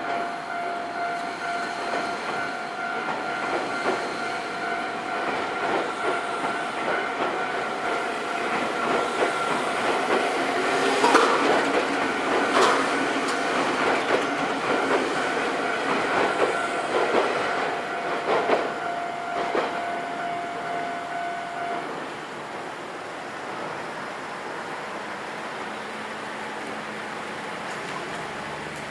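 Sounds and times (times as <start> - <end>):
level crossing warning bell: 0.0 - 22.0
train wheels clattering over rail joints: 3.0 - 19.8.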